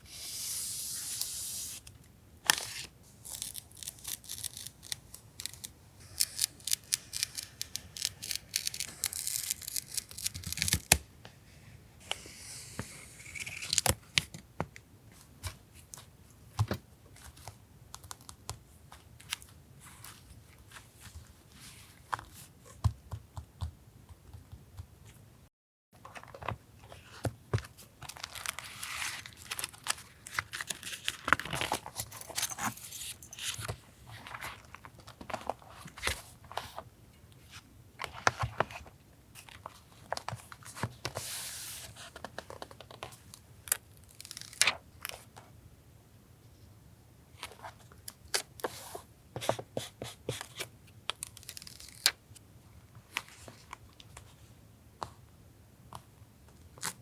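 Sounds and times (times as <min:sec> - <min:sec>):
paper tearing and crinkling: 0:02.5 - 0:11.0.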